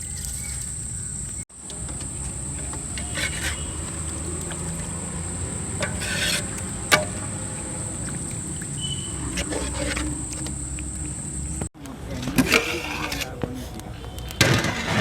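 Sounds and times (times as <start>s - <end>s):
insects chirring: 0.0s - 11.7s.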